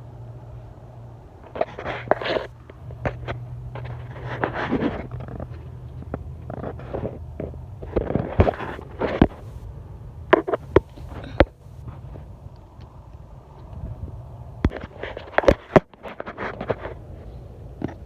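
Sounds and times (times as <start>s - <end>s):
steady low hum: 0.0s - 18.0s
knocks clicks and scraping: 1.4s - 9.7s, 10.3s - 12.0s.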